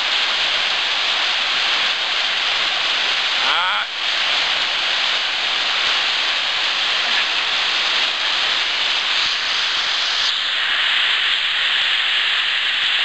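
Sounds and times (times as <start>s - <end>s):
waterfall pouring: 0.0s - 13.0s.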